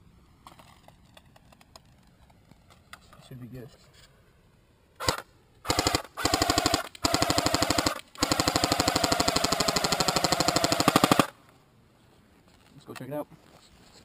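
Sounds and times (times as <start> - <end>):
airsoft gun firing bursts: 5.0 - 11.4.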